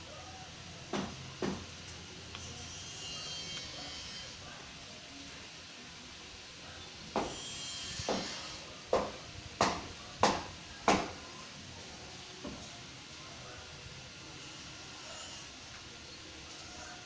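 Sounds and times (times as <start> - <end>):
sharp knocks: 0.9 - 1.6, 7.2 - 7.4, 8.0 - 8.3, 8.9 - 11.2.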